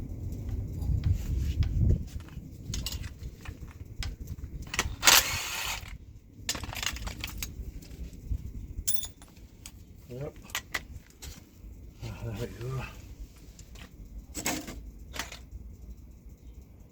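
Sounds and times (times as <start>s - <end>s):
metal tool clicks and clinks: 2.7s - 7.5s, 8.9s - 9.8s.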